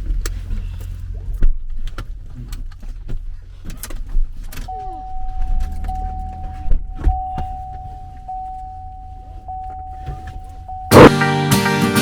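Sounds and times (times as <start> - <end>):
loud music: 10.9 - 12.0.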